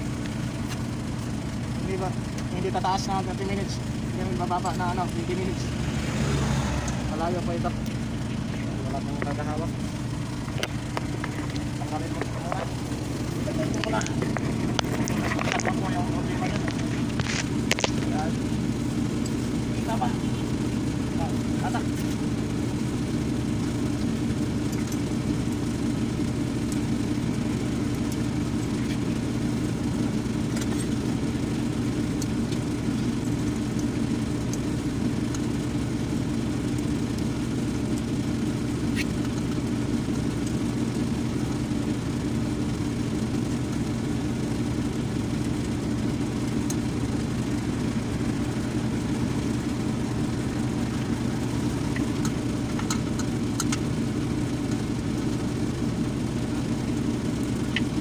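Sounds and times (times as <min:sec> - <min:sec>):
engine idling: 0:00.0 - 0:58.0
faint clicks: 0:51.9 - 0:53.8.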